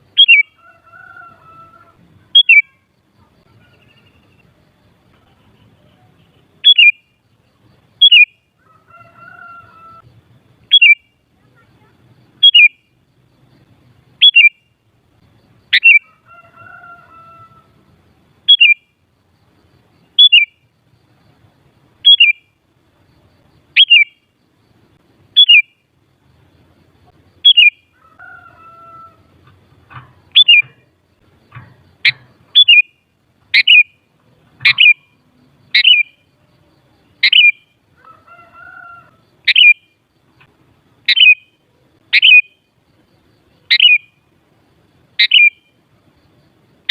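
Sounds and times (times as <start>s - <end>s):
bird chirping: 0.0s - 44.4s, 45.0s - 46.9s
faint lower bird phrase: 1.1s - 4.5s.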